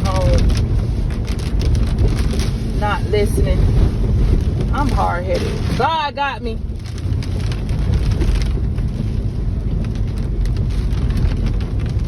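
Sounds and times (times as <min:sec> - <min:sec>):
low rumble of wind: 0:00.0 - 0:12.0.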